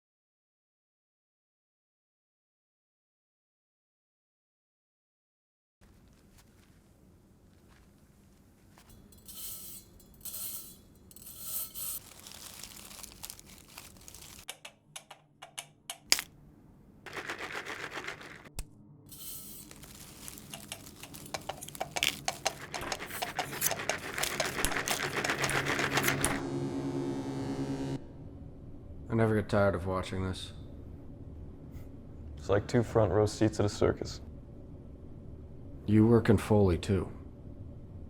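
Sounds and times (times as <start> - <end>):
dense crackling: 12.0 - 14.5.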